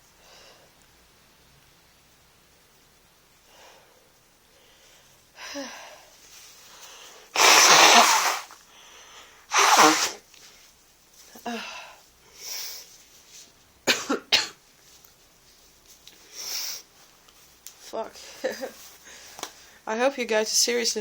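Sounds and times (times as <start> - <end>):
person sneezing: 7.4 - 8.6, 9.5 - 10.2
person coughing: 13.9 - 14.6.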